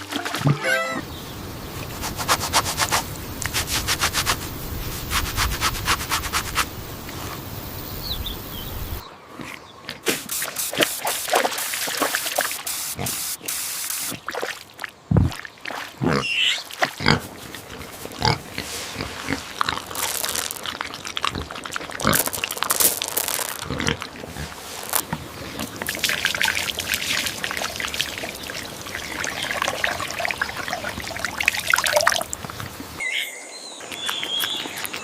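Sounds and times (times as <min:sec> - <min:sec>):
pigs grunting and squealing: 0:16.0 - 0:19.9, 0:23.6 - 0:24.6.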